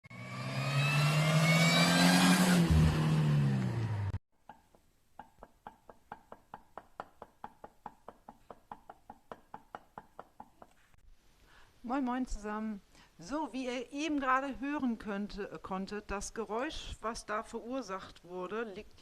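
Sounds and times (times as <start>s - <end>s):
car engine revving: 0.1s - 4.2s
supercharger whine: 0.1s - 4.2s.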